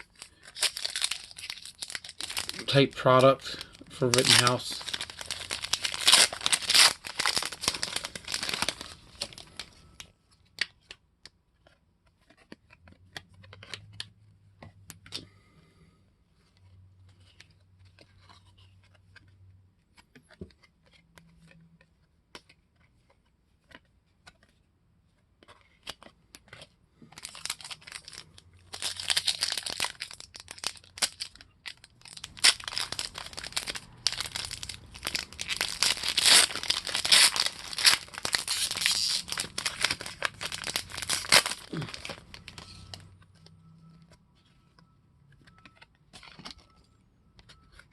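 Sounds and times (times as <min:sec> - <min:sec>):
card pack wrappers tearing: 0:00.0 - 0:10.1, 0:27.1 - 0:43.1
cards clicking and rustling: 0:00.0 - 0:15.5, 0:16.5 - 0:47.9.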